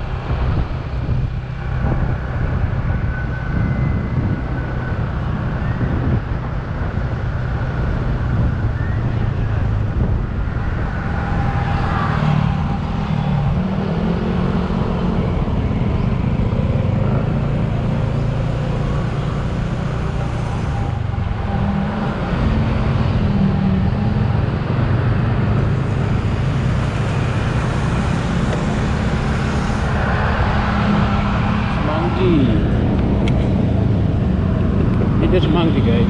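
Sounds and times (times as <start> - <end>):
traffic and road noise: 0.0 - 36.0
motorcycle engine revving: 9.5 - 36.0.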